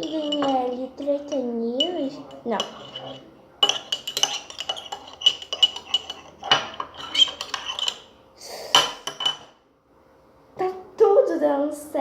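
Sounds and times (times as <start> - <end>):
spoon stirring in a bowl: 0.0 - 9.6.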